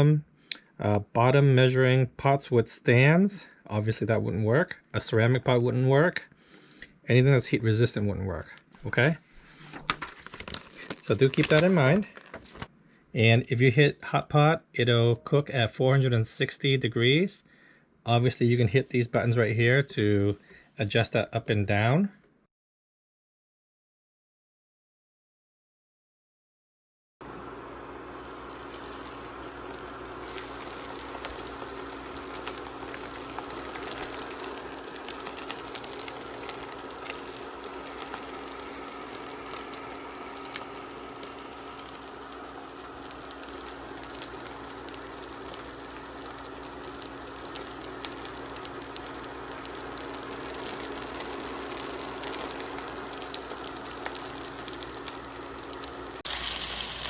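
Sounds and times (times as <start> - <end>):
induction cooktop hum: 27.2 - 57.0
pan sizzling and frying: 27.2 - 57.0.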